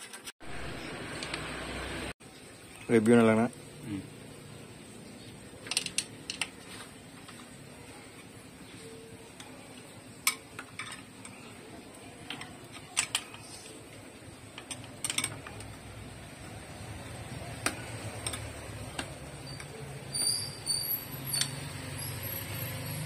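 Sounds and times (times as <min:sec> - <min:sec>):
metallic clicks of hand tools: 0:17.6 - 0:20.4, 0:21.2 - 0:21.7.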